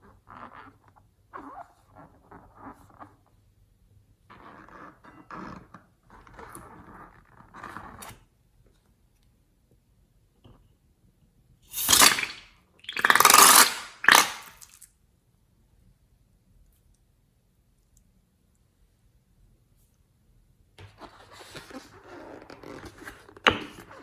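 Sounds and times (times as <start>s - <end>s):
slime squelching bursts: 11.7s - 14.8s
slime squishing: 11.8s - 14.8s.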